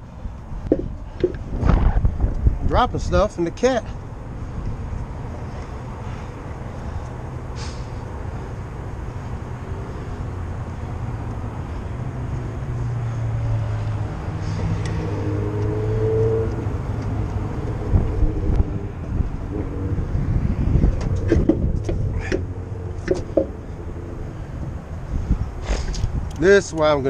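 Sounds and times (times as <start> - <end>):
vehicle engine droning: 0.0 - 27.0
sharp knocks: 0.7 - 1.8, 21.1 - 23.6.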